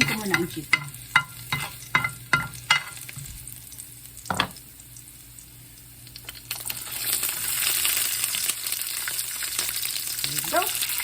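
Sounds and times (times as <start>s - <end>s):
utensil knocking against pan: 0.0s - 3.0s
chicken frying in hot oil: 0.0s - 11.0s.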